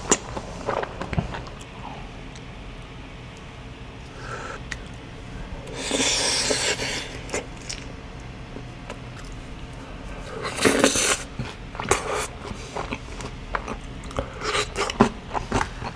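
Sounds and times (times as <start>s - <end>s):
chewing and smacking: 0.0s - 3.6s, 7.2s - 15.9s.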